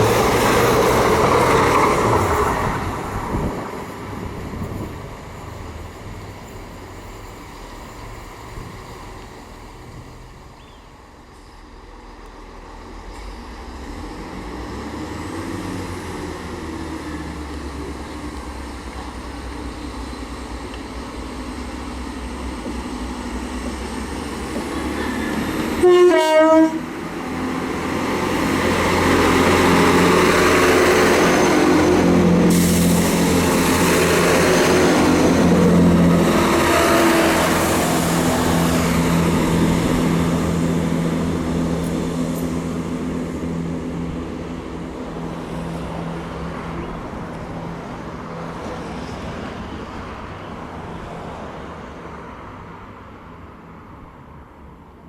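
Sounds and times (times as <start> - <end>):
train diesel engines running: 0.0 - 55.0
two-note train horn: 25.8 - 26.9.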